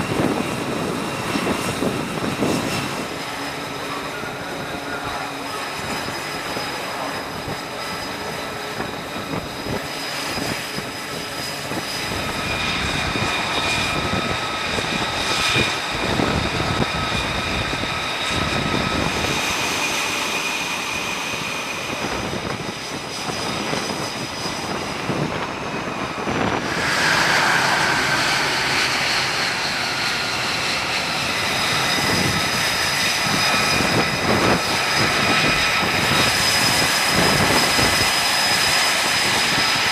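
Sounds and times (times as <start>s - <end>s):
aircraft engines running: 0.0s - 39.9s
high engine whine: 0.0s - 39.9s.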